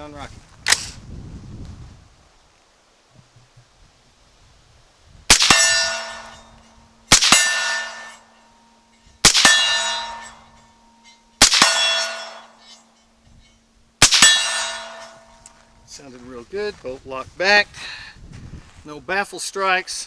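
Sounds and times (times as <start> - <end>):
suppressed rifle shots: 5.3 - 6.4, 7.1 - 8.2, 9.2 - 10.4, 11.4 - 12.5, 14.0 - 15.3
metallic ringing: 5.3 - 15.9.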